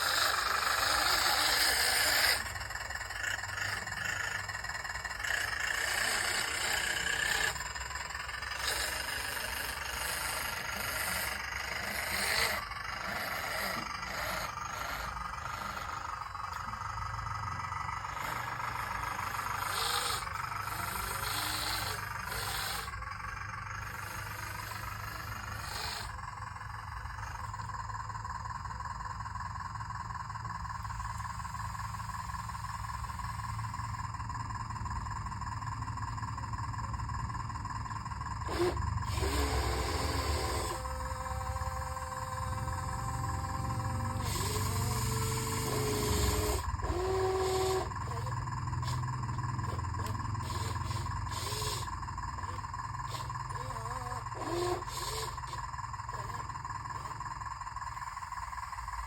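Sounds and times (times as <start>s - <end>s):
small electric motors running: 0.0s - 59.0s
steady low hum: 0.0s - 59.0s.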